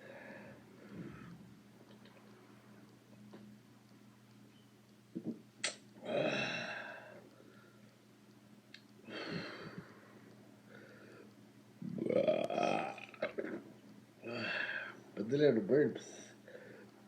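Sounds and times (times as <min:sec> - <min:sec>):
man sighing: 0:06.0 - 0:07.2, 0:14.2 - 0:15.0.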